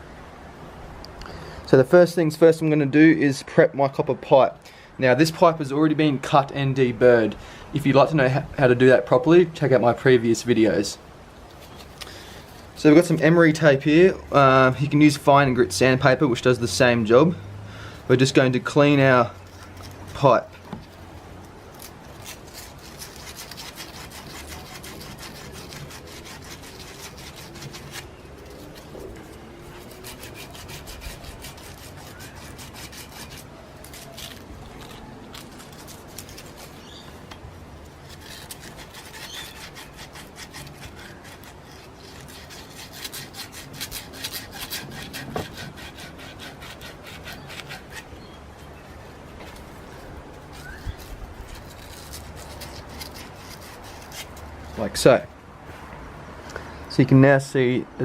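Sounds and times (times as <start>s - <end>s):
emery tape rubbing copper pipe: 18.2s - 56.0s.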